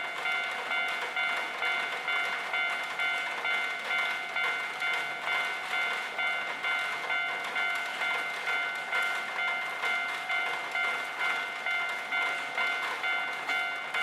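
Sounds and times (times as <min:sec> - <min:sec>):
level crossing warning bell: 0:00.0 - 0:14.0.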